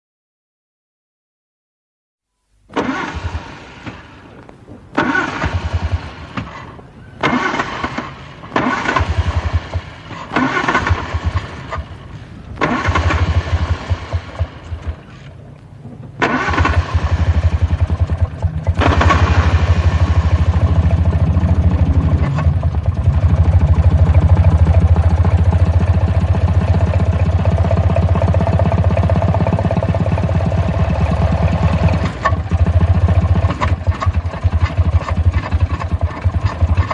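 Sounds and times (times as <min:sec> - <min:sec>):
car engine starter cranking: 0:02.7 - 0:25.8, 0:31.2 - 0:36.9
car engine running: 0:02.8 - 0:36.9.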